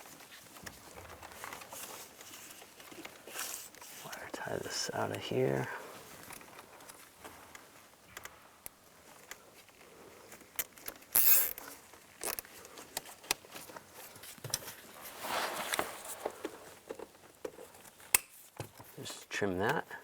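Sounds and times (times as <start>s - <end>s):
wiring clicking and rustling: 0.0s - 5.4s, 6.1s - 14.9s
zip tie rasping: 11.0s - 12.5s.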